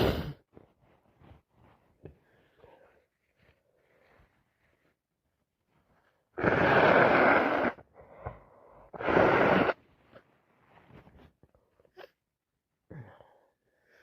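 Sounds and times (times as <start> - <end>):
person blowing nose: 0.0 - 0.4, 6.4 - 7.8, 9.0 - 9.8.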